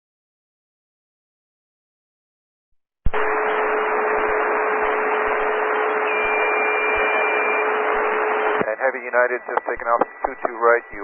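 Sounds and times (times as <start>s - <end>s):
radio static hiss: 3.2s - 11.0s.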